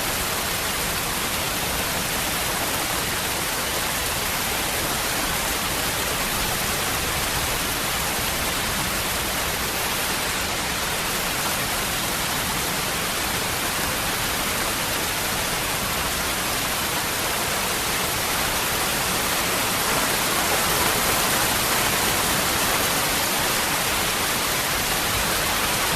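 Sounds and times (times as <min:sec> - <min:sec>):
waterfall rushing: 0:00.0 - 0:25.9.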